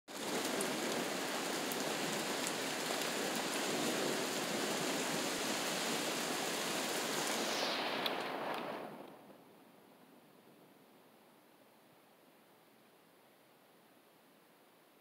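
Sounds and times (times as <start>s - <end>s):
sharp raindrop hits: 0.1s - 9.3s
steady rain falling: 0.1s - 15.0s.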